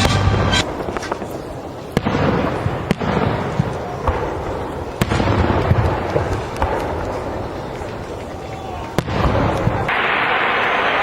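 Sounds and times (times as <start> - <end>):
fireworks exploding: 0.0 - 11.0.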